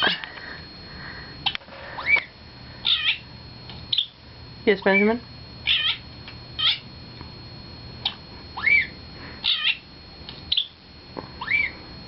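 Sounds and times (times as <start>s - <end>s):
high animal calls: 1.9s - 3.3s, 5.6s - 6.0s, 6.6s - 6.8s, 8.0s - 9.9s, 11.4s - 11.8s.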